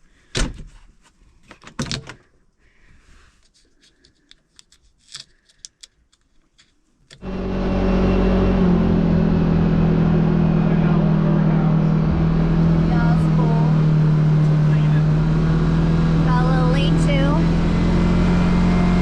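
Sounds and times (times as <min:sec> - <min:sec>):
utility vehicle engine running: 0:07.2 - 0:19.0.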